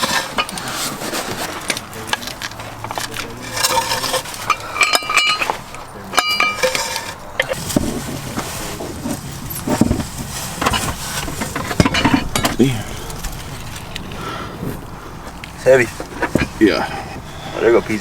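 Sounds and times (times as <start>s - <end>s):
hand tools clinking and knocking: 0.0s - 18.0s
ringing metallic clinks: 3.4s - 7.7s.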